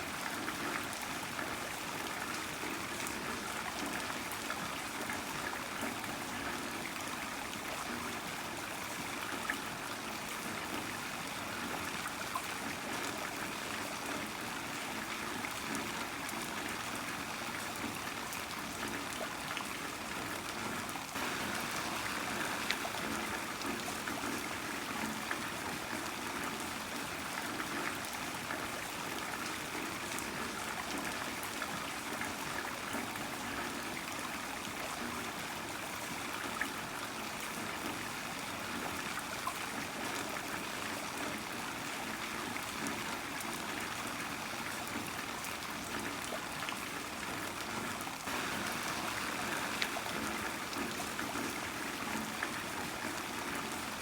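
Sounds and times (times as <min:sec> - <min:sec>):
trickling runoff: 0:00.0 - 0:54.0
heavy rain falling: 0:21.1 - 0:26.8, 0:48.3 - 0:54.0.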